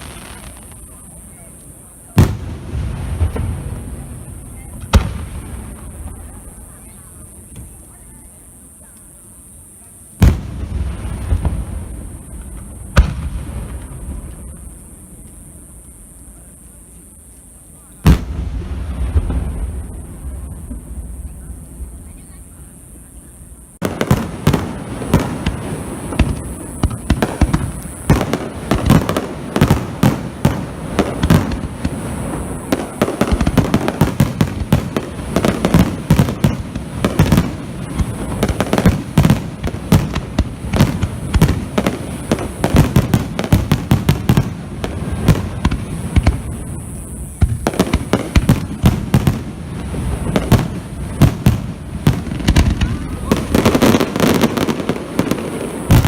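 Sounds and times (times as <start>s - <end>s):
fireworks bursting: 0.0s - 56.0s.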